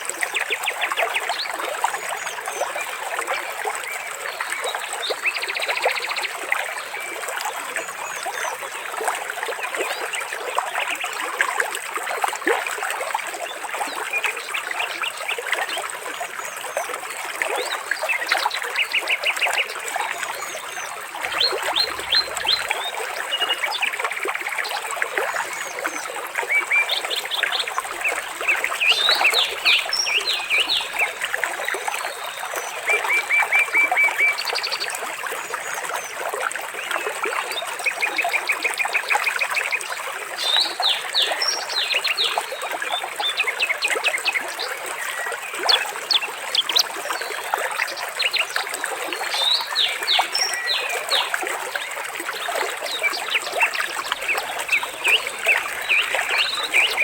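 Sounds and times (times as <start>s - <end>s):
water trickling: 0.0s - 57.0s
birds chirping: 21.2s - 23.8s, 26.5s - 32.3s, 52.9s - 57.0s.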